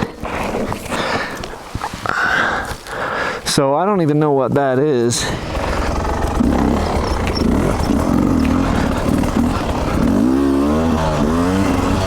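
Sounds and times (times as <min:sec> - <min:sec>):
two-stroke dirt bike engines: 0:04.4 - 0:12.0.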